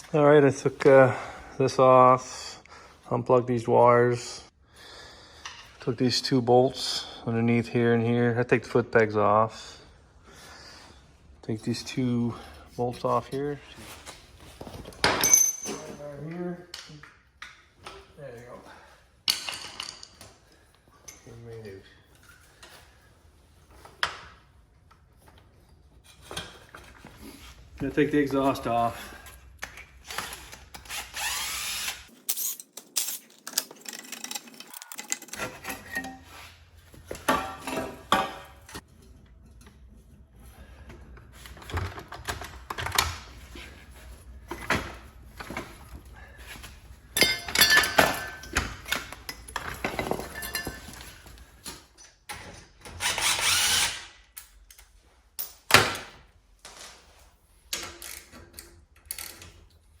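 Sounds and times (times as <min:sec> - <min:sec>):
metal parts clanking: 0:15.0 - 0:16.0, 0:32.3 - 0:36.2
power tool bursts: 0:30.8 - 0:32.6, 0:53.0 - 0:54.1.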